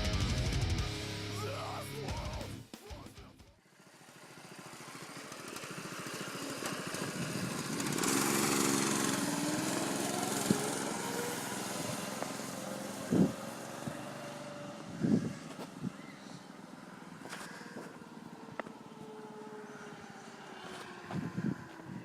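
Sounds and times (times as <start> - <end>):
small engine running: 3.6 - 22.0.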